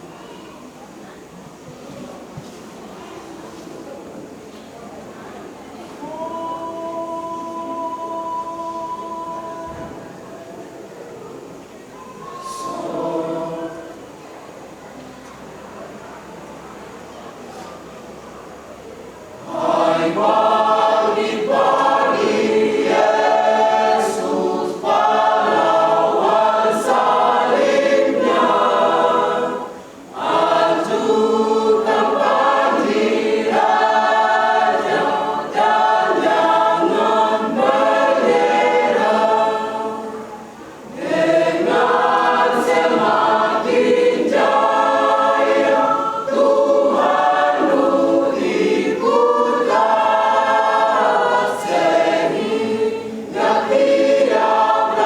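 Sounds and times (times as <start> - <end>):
choir singing: 6.0 - 10.2, 12.1 - 14.3, 19.4 - 55.0.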